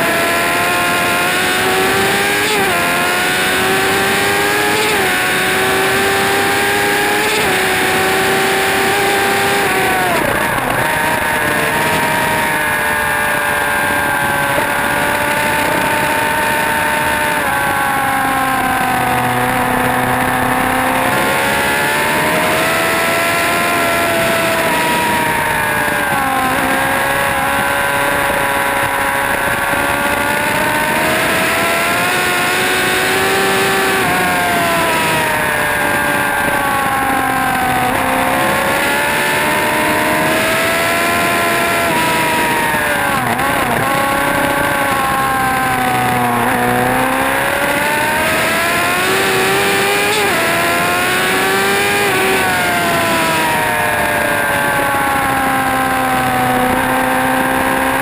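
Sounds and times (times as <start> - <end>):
motorcycle engine revving high: 0.0 - 58.0.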